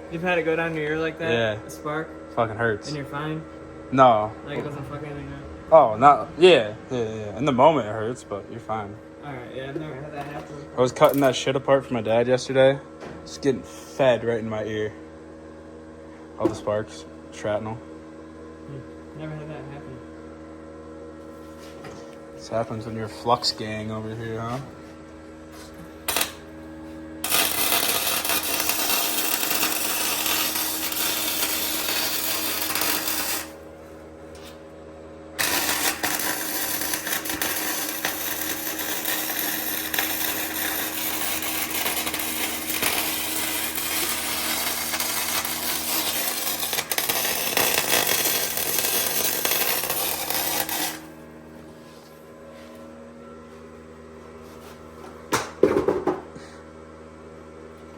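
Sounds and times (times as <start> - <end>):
welder arc crackling: 11.0 - 11.4, 26.0 - 26.5, 27.2 - 33.7, 35.4 - 51.2.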